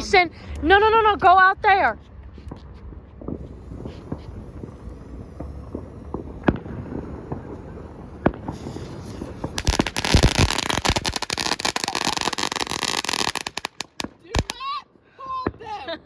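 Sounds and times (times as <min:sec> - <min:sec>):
firecracker crackling pops: 0:03.2 - 0:14.6
firecracker hissing: 0:03.3 - 0:14.6.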